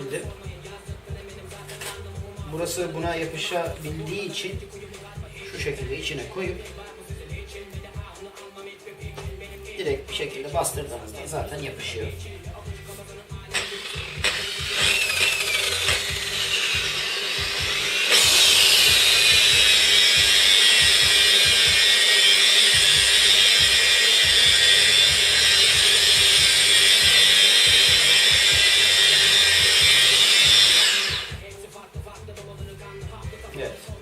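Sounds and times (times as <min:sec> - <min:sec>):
polisher motor whining: 0:13.5 - 0:31.4.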